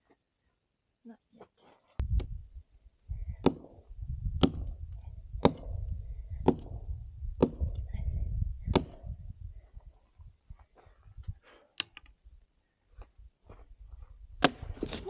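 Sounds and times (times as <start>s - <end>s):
low rumble: 2.0s - 10.4s.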